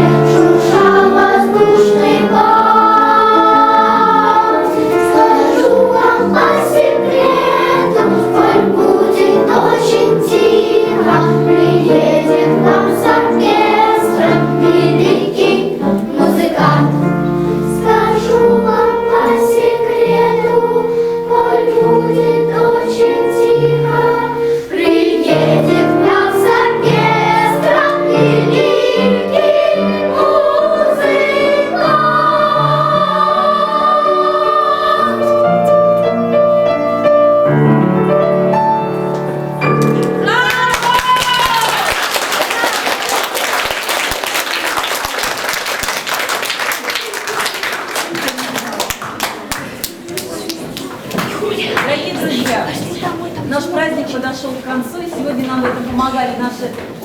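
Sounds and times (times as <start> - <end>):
instrumental accompaniment: 0.0 - 40.6
children's choir singing: 0.0 - 40.8, 41.5 - 57.0.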